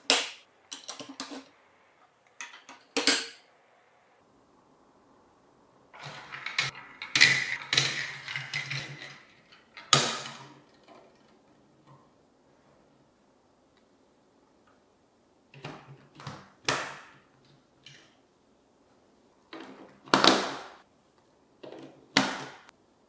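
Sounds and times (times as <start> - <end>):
plastic marbles clattering on a track: 6.0 - 10.8.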